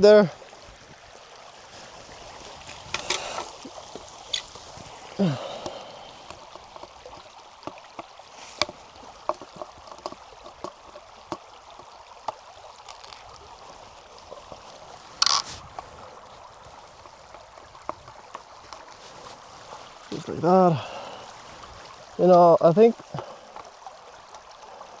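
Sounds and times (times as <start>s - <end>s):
stream rushing: 0.0s - 25.0s
light clicks and knocks: 2.6s - 5.0s, 5.6s - 13.2s.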